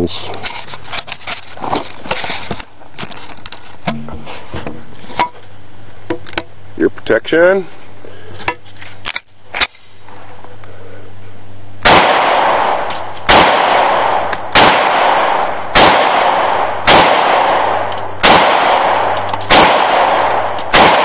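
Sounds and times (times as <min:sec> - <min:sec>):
pistol shots: 0:11.8 - 0:21.0.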